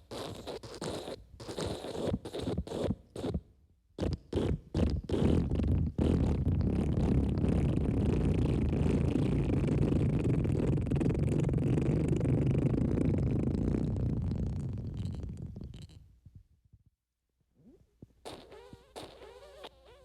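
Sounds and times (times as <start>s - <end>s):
wet fart sound: 0.0s - 3.4s, 4.0s - 16.0s, 17.6s - 20.0s.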